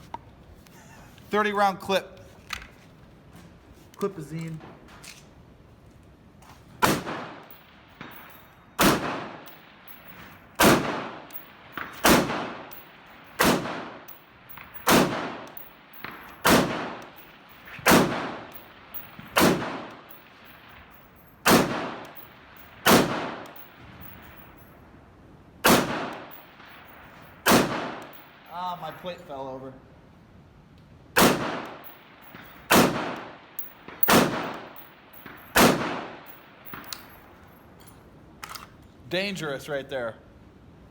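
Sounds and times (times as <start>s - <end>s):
rifle gunshots: 6.8s - 24.3s, 25.6s - 28.5s, 31.2s - 36.9s.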